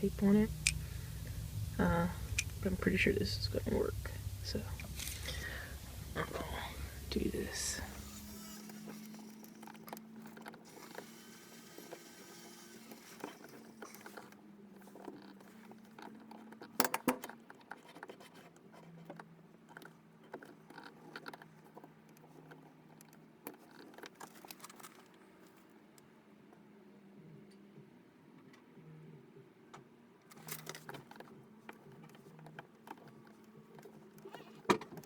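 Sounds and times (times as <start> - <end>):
steady low hum: 0.0 - 25.3
tool handling scrapes and clicks: 7.9 - 25.7, 30.3 - 35.0.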